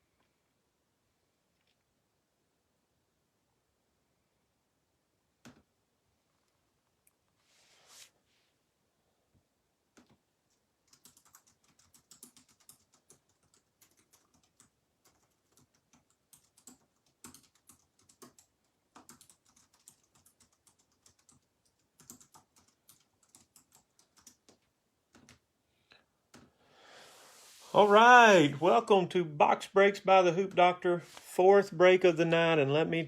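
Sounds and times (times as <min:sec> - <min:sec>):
faint typing on a keyboard: 0:09.3 - 0:26.6.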